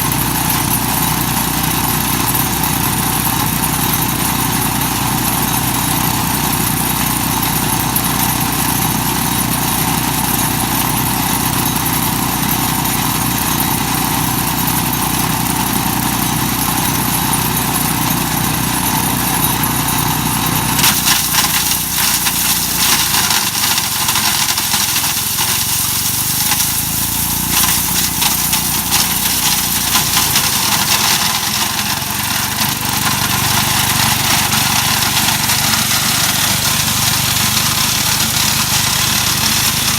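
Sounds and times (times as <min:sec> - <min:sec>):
wood chipper engine running: 0:00.0 - 0:39.9
nuts crackling through chipper: 0:20.8 - 0:39.9.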